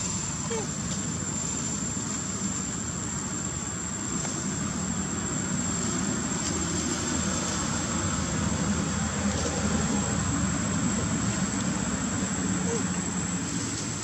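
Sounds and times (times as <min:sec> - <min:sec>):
steady mechanical rumble: 0:00.0 - 0:14.0.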